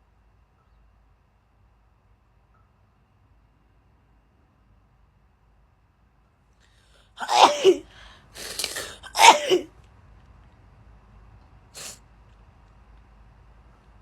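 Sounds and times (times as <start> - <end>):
sharp breath: 6.6 - 9.6, 11.8 - 12.0
girl sneezing: 7.2 - 9.7.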